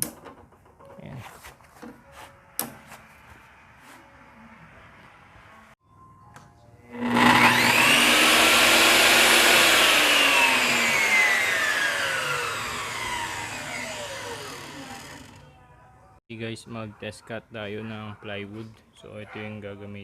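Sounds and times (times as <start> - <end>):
table saw whine: 6.9 - 15.4.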